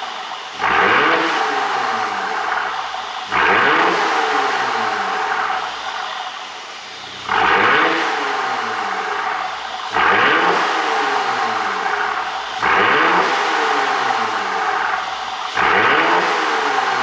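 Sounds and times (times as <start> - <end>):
car engine revving: 0.0 - 17.0.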